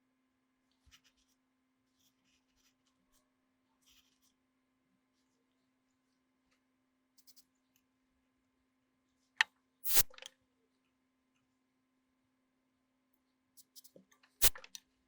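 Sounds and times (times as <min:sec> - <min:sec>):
sharp click: 0:09.9 - 0:10.3, 0:14.4 - 0:14.8.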